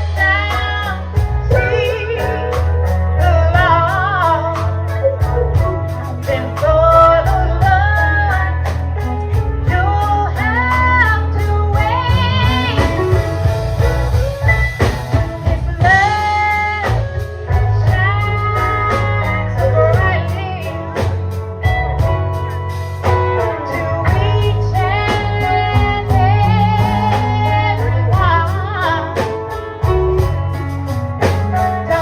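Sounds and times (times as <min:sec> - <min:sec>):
person singing with vibrato: 0:00.0 - 0:14.4, 0:23.4 - 0:29.7
electric guitar: 0:00.0 - 0:32.0
heavy bass line: 0:00.0 - 0:32.0
steady drum beat: 0:00.0 - 0:32.0.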